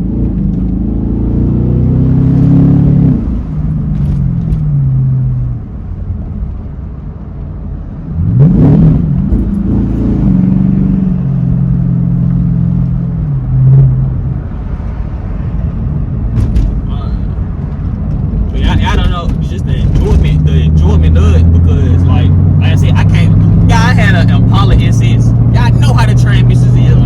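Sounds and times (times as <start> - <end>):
car engine revving: 0.0 - 6.4, 8.0 - 27.0
exhaust cracks: 16.2 - 27.0.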